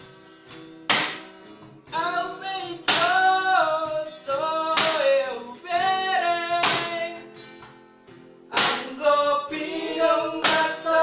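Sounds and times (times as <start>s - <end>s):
sharp percussive hit: 0.9s - 1.4s, 10.4s - 11.0s
music with singing: 1.8s - 7.8s, 8.5s - 11.0s.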